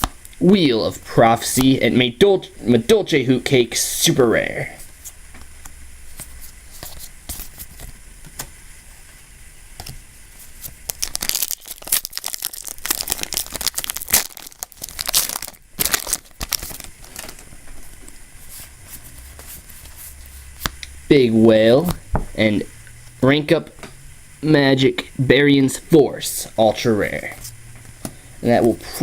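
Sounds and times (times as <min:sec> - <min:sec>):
cards being handled: 0:04.8 - 0:08.6, 0:09.8 - 0:20.8
wrapper tearing and crinkling: 0:10.6 - 0:17.9.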